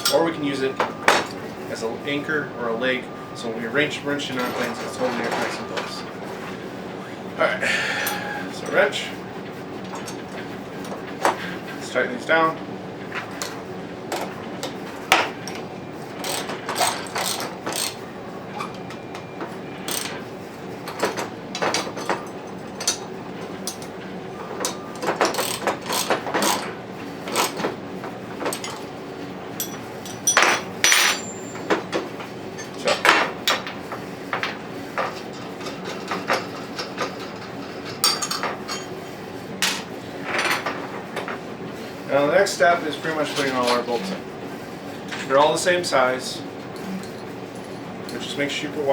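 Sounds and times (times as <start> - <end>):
wrench clicking on bolts: 16.2 - 18.0.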